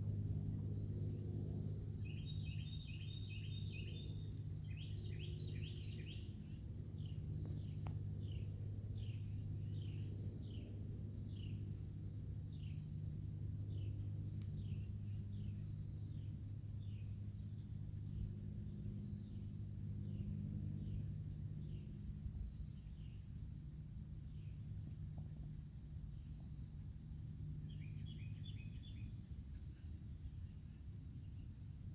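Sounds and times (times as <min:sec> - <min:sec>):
steady low hum: 0:00.0 - 0:31.9
birds chirping: 0:00.8 - 0:11.8, 0:23.9 - 0:31.8.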